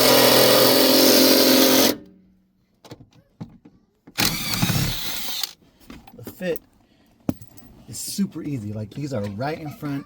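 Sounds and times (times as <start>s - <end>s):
power tool motor whine: 4.2s - 5.6s.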